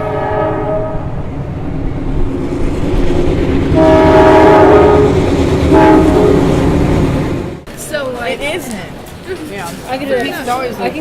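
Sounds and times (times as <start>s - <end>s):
train horn chord: 0.0s - 1.2s, 3.8s - 6.8s
low rumble of train: 0.0s - 11.0s.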